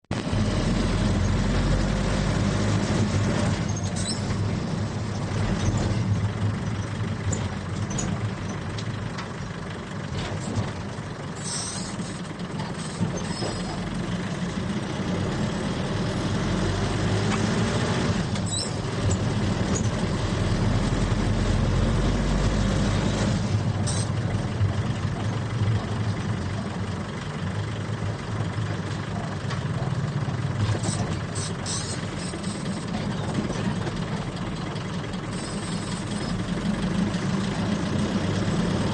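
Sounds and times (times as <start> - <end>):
rattles and jolts over bumps: 0.1 - 38.9
vehicle engine drone: 0.1 - 38.9.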